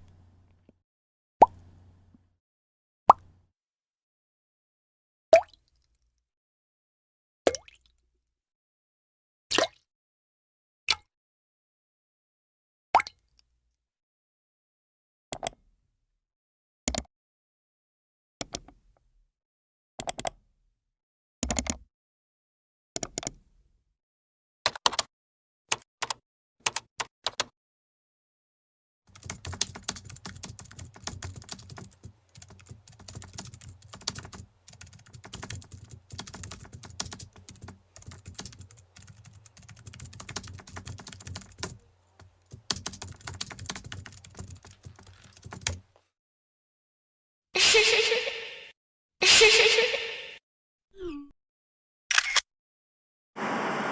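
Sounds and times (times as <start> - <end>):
rapid typing on computer keyboard: 25.7 - 27.5, 29.1 - 45.9.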